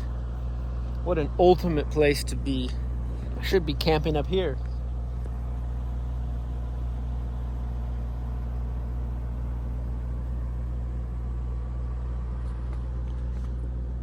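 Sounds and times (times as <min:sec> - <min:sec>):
car engine running low hum: 0:00.0 - 0:14.0.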